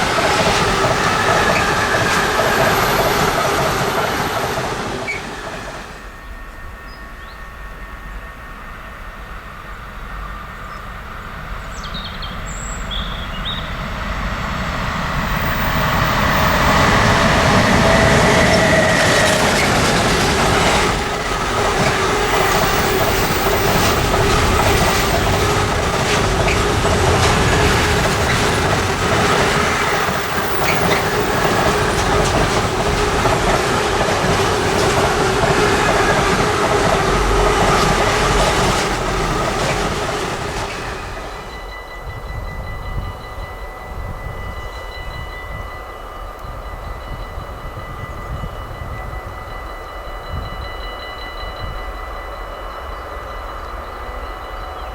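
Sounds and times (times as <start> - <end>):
wheels clattering over rails: 0.0 - 6.0, 14.2 - 41.6
train passing: 0.0 - 54.9.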